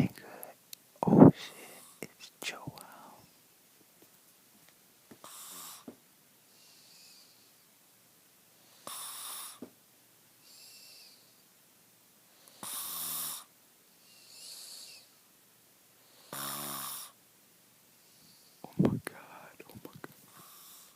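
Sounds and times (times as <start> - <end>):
soft breaths: 0.0 - 3.6, 5.2 - 7.8, 10.4 - 11.6, 17.9 - 20.9
loud rasping snores: 8.8 - 9.6, 12.5 - 13.5, 16.1 - 17.2.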